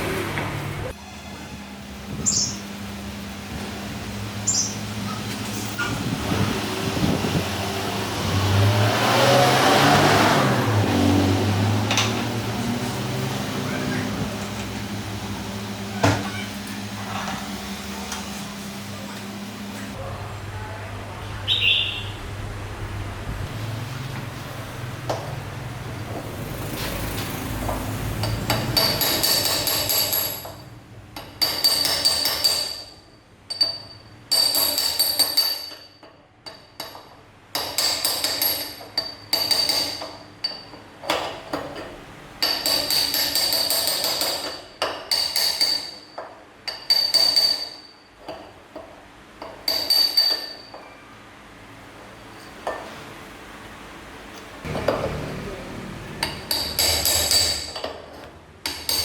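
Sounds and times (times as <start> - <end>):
hammer striking steel: 28.2 - 30.6, 56.1 - 58.0, 58.6 - 59.0.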